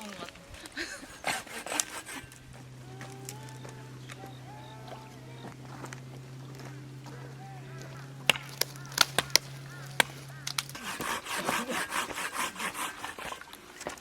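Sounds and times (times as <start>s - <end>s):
hand saw cutting wood: 0.8s - 4.0s, 8.2s - 14.0s.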